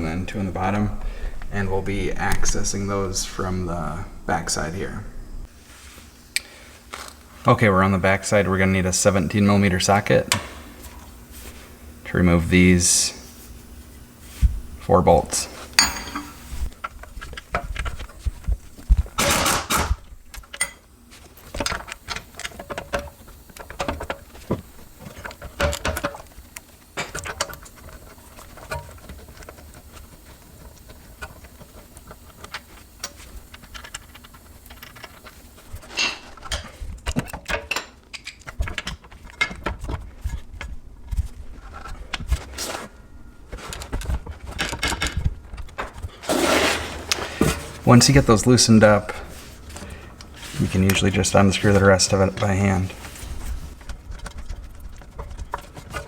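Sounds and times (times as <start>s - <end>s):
metal clinks and rattles: 15.8s - 16.5s.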